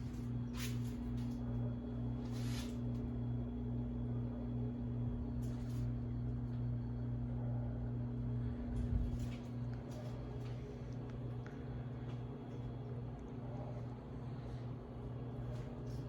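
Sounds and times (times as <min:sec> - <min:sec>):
ceiling fan motor humming: 0:00.0 - 0:16.0.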